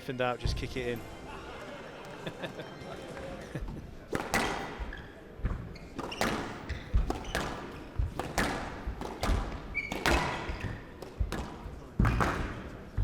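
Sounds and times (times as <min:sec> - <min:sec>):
squash ball cracking off rackets: 0:04.1 - 0:12.7.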